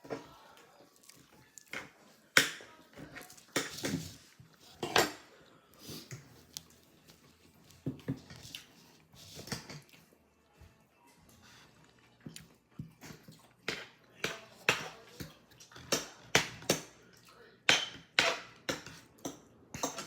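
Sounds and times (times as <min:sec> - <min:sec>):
utensils clicking on dishes: 0:17.7 - 0:20.0.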